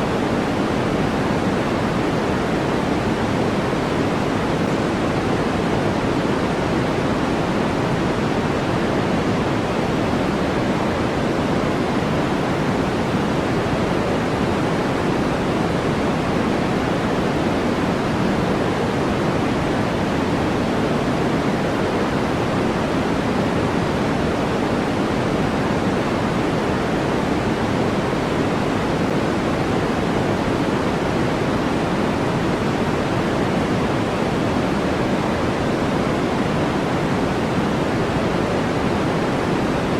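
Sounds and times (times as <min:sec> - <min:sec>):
low white noise roar: 0:00.0 - 0:39.9.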